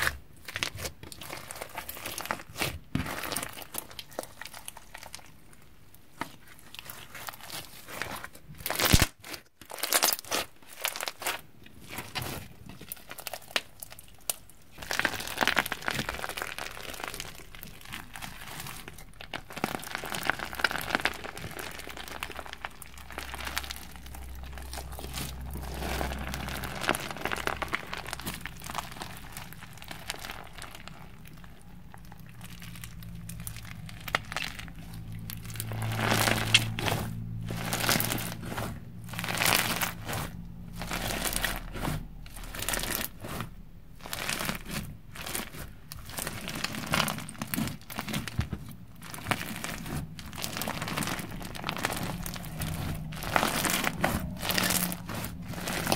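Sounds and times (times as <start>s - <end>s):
crunchy slime crackling: 0.0s - 55.9s.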